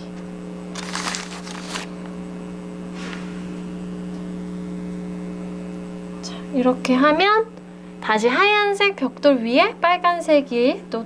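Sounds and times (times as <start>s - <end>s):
low electrical hum: 0.0s - 11.0s
small bricks rustling and scraping: 0.8s - 1.9s.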